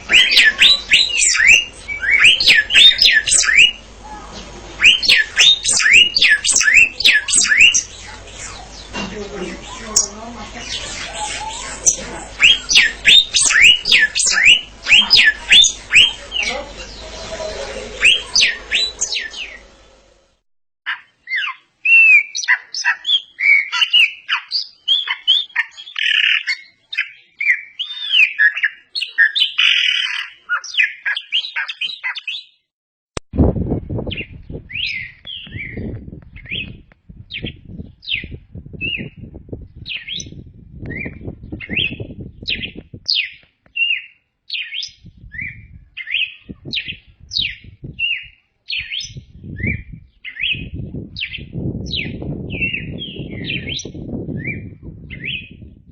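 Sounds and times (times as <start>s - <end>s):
bird warbling song: 0.0s - 20.0s, 20.9s - 32.6s, 34.0s - 55.7s
low rumble: 33.3s - 43.1s, 49.2s - 55.9s.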